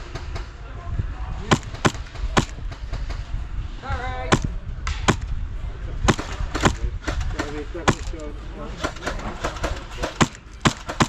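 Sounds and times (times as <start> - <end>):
airsoft gun shots: 1.5 - 3.2, 4.3 - 5.3, 6.1 - 11.0.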